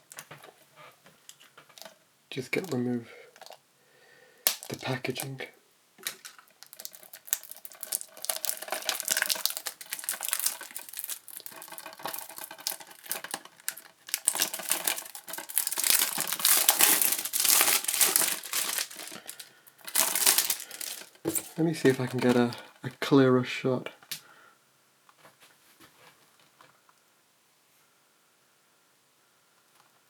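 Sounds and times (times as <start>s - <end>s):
plastic wrapping crinkling: 1.3s - 3.6s, 4.4s - 5.3s, 6.0s - 23.0s.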